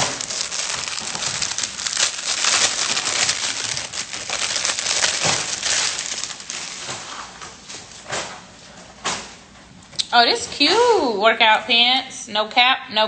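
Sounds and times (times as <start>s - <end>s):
packaging crinkling and rustling: 0.0s - 8.4s.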